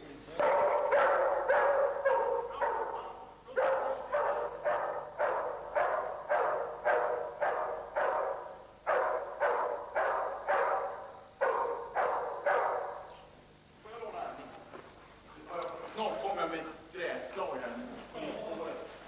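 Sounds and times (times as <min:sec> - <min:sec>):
dog barking: 0:00.4 - 0:13.3.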